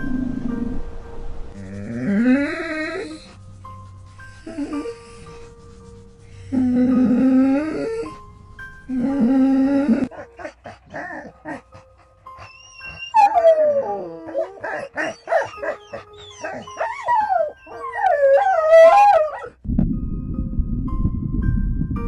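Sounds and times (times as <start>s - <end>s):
high wavering animal cries: 12.4s - 19.5s.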